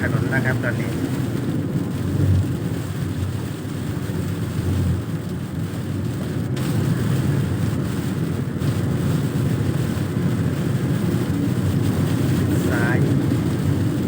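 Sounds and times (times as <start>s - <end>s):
car driving on wet road: 0.0s - 14.0s.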